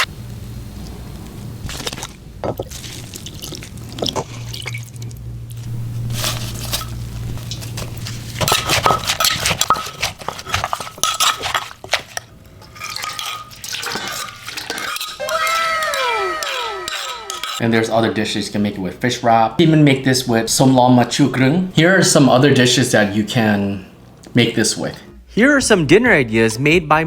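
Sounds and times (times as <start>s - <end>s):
low steady hum: 0.0s - 25.3s
utensils clinking on plates: 8.4s - 18.3s.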